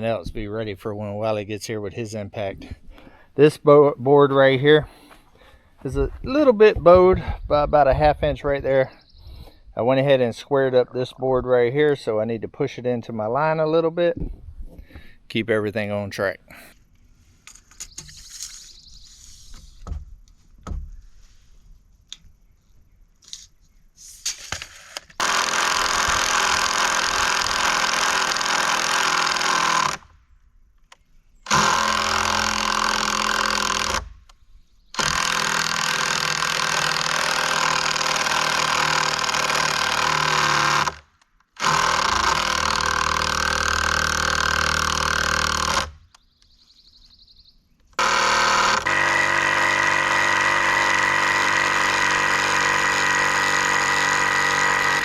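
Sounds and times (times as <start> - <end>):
impact driver hammering a bolt: 48.0 - 55.0.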